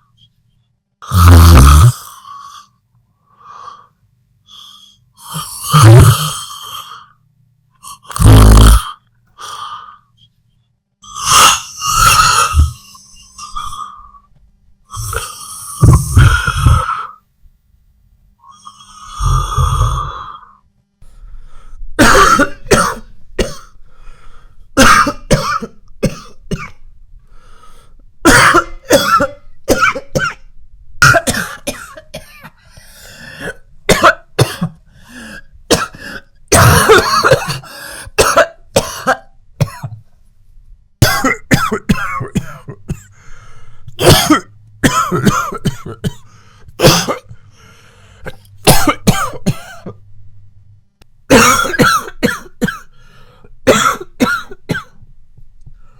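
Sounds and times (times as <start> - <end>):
person coughing: 7.9 - 9.0, 22.0 - 23.8, 24.8 - 26.8, 28.3 - 32.6, 33.3 - 40.0, 41.0 - 43.2, 43.9 - 47.4, 48.2 - 50.0, 51.3 - 52.9, 53.7 - 55.0.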